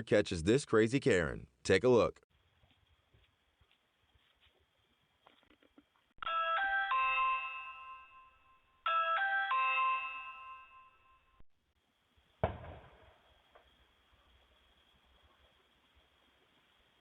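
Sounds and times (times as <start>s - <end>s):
doorbell chime: 6.2s - 11.4s
sharp thump: 12.4s - 13.0s.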